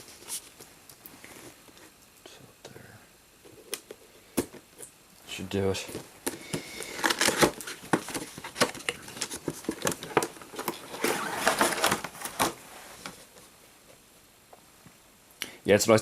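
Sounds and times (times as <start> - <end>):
packaging crinkling and rustling: 5.7 - 13.4.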